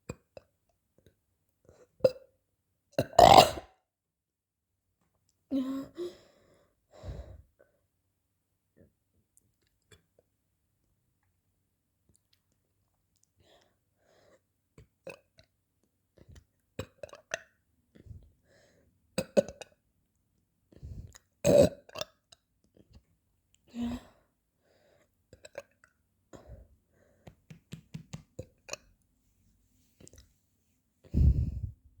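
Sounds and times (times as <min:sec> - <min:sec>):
person burping: 0:03.0 - 0:03.7.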